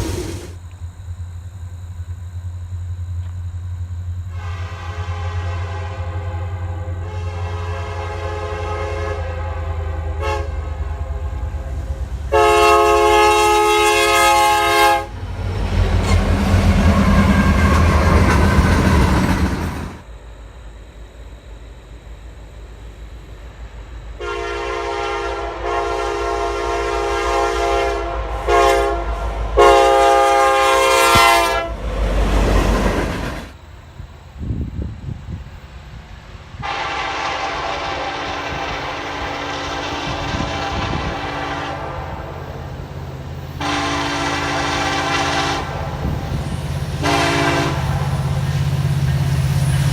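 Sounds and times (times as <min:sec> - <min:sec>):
passing train rumble: 0:00.0 - 0:49.9
locomotive air horn blasts: 0:04.3 - 0:15.2, 0:16.0 - 0:18.9, 0:24.2 - 0:31.9, 0:36.6 - 0:42.7, 0:43.6 - 0:48.2
rail clatter: 0:15.2 - 0:20.0, 0:32.0 - 0:33.6.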